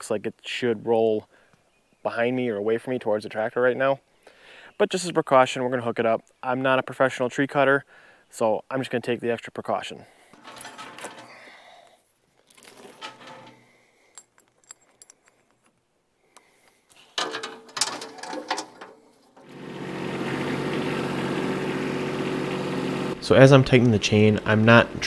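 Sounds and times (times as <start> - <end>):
metal chain clinking: 10.4 - 11.4, 12.0 - 15.8, 16.8 - 19.4
diesel tractor engine idling: 19.4 - 25.0.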